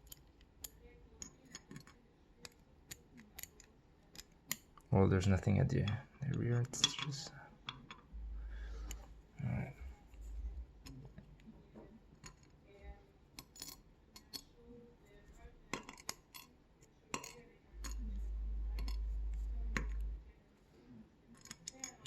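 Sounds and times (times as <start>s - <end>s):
small metal parts clicking: 0.0s - 4.9s, 12.2s - 12.6s, 13.4s - 14.5s, 15.7s - 16.5s, 17.1s - 20.2s, 21.3s - 22.0s
steady low hum: 5.0s - 13.2s, 17.6s - 21.2s.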